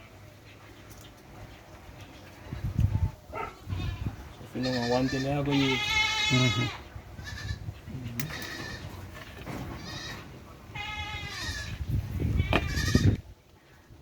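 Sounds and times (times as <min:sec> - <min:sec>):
animal bleating: 0:03.4 - 0:09.1, 0:09.7 - 0:13.2.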